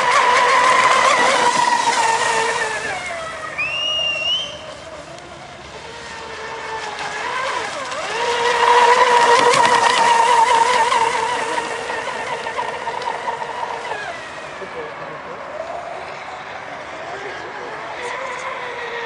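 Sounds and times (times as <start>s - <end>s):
electric motor whining: 0.0s - 19.0s.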